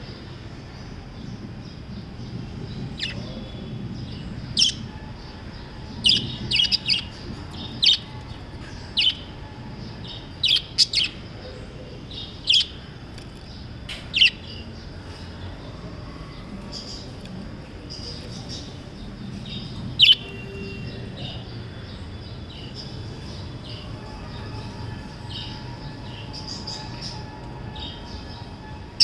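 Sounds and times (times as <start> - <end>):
low background hum: 0.0 - 29.0
budgerigars chirping: 3.0 - 3.2, 4.5 - 4.8, 6.0 - 8.1, 9.0 - 9.4, 10.1 - 11.2, 12.4 - 12.8, 20.0 - 20.4.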